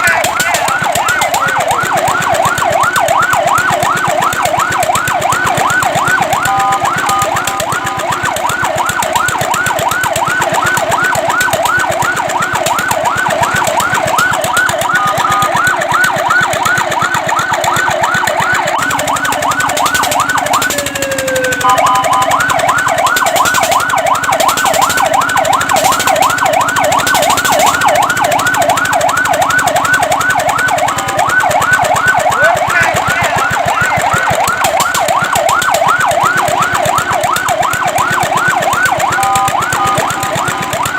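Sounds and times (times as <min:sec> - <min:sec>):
fire truck siren sweeping: 0:00.0 - 0:40.9.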